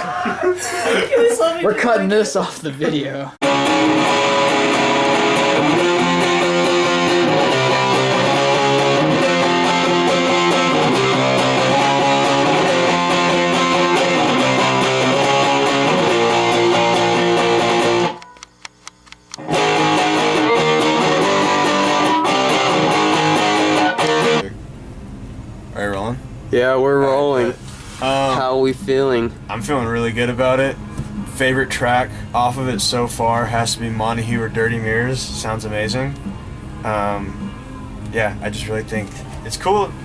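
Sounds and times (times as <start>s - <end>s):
rock music distorted guitar: 3.4s - 18.4s, 19.4s - 24.5s.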